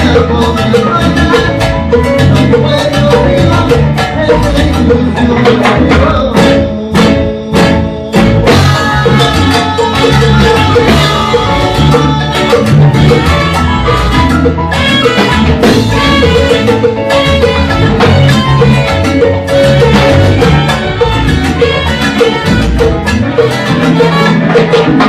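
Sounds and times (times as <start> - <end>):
instrumental salsa music: 0.0 - 25.0.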